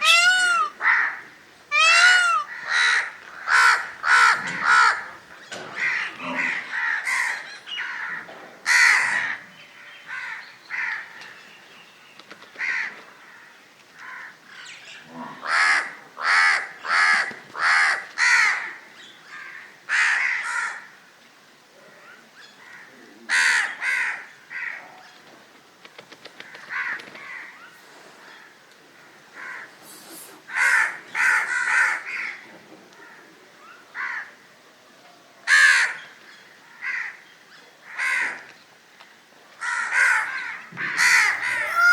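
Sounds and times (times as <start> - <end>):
crows cawing: 0.0 - 5.2, 5.8 - 9.4, 10.1 - 11.3, 12.6 - 14.4, 15.4 - 20.9, 22.6 - 24.8, 26.4 - 27.5, 29.0 - 29.7, 30.5 - 32.4, 34.0 - 34.4, 36.7 - 37.2, 37.9 - 38.4, 39.6 - 41.9.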